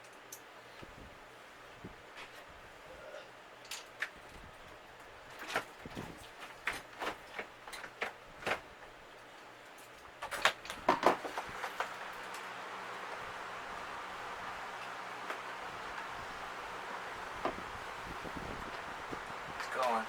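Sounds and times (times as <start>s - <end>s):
plastic parts clicking and knocking: 9.7s - 12.4s.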